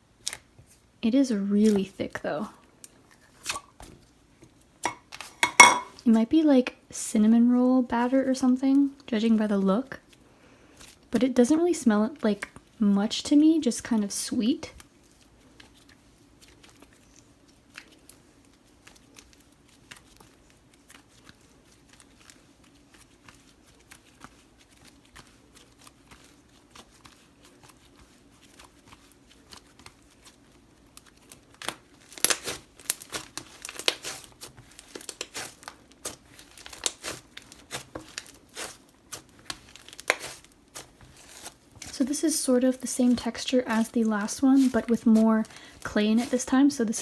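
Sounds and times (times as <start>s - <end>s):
slime crackling and popping: 14.8s - 47.0s.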